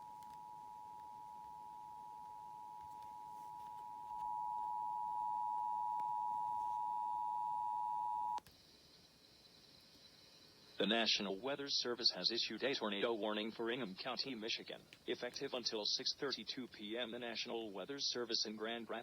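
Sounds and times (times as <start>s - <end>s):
click: 0.2s - 1.1s.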